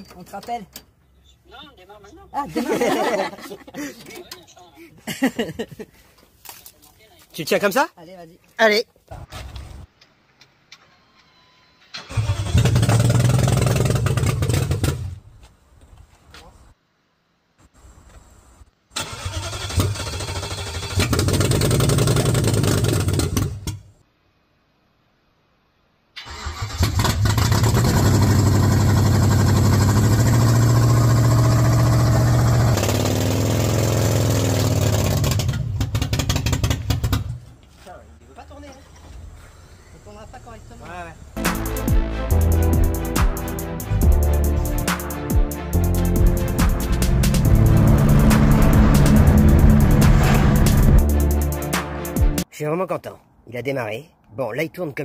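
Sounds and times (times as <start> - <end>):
engine cranking and running roughly: 12.0 - 15.1, 19.0 - 23.7, 26.3 - 37.3.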